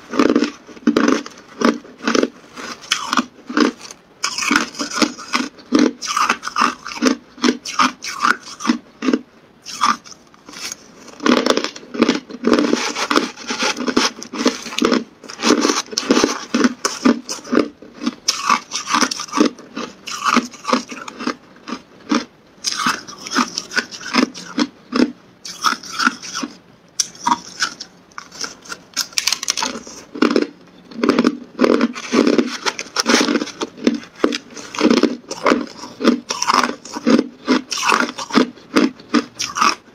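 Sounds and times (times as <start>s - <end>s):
ice being chewed: 0.0s - 39.9s.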